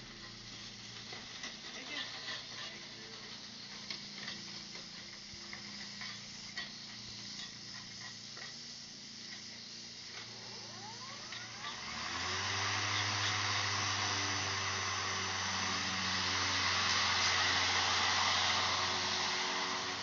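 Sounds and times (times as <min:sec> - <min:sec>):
electric lawn mower whirring: 0:00.0 - 0:20.0.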